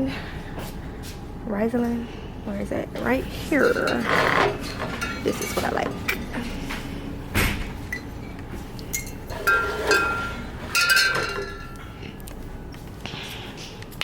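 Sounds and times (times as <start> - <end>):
glass bottles clinking: 3.5 - 6.4, 8.9 - 11.8.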